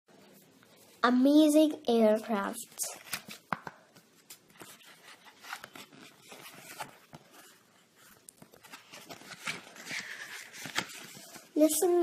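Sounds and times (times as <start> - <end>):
rustling handling noises: 2.8 - 12.0.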